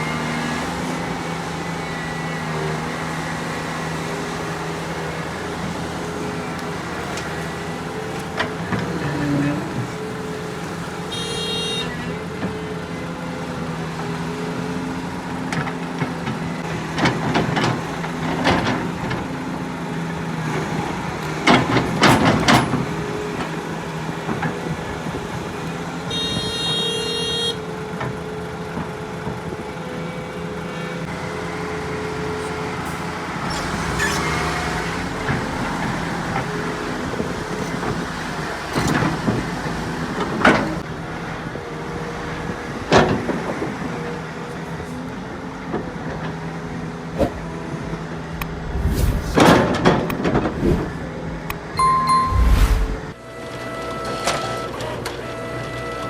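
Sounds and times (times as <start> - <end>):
heavy diesel machinery running: 0.0 - 51.5
short high-pitched tone: 51.6 - 53.2.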